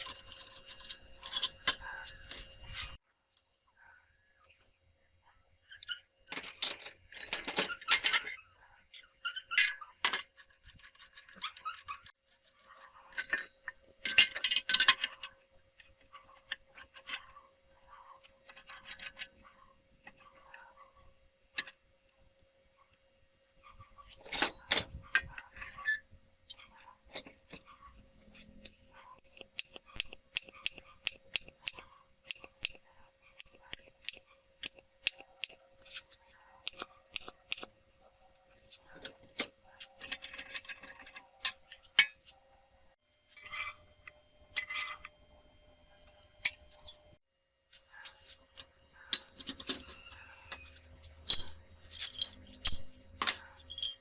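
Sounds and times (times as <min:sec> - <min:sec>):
metal tools clinking: 0:00.0 - 0:03.0, 0:05.8 - 0:12.1, 0:13.1 - 0:15.3, 0:24.1 - 0:30.2, 0:49.1 - 0:54.0.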